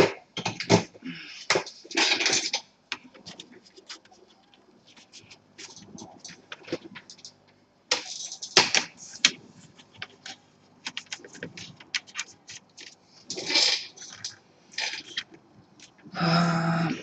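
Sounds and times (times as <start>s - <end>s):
clatter of laptop parts: 0.0s - 16.0s.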